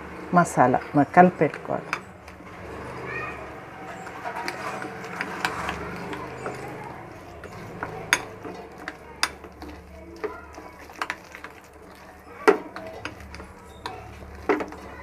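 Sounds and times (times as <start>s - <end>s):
marinade being stirred in bowl: 0.0s - 15.0s
spoon clinking against bowl: 4.4s - 9.8s.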